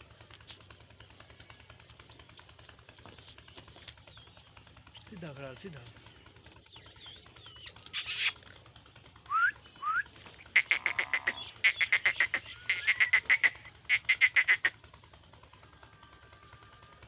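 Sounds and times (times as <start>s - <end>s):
bird chirping: 0.5s - 2.7s, 3.4s - 4.6s, 6.5s - 8.4s, 10.4s - 14.6s.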